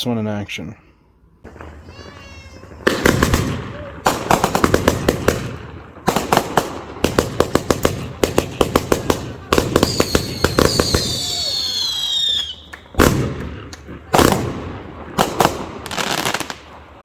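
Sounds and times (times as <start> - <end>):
fireworks cake firing shots: 1.4 - 17.0.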